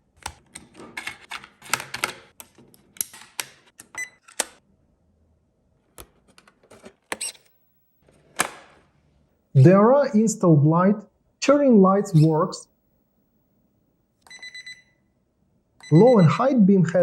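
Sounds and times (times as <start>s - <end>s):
plastic clicks and rattles: 0.1s - 4.6s.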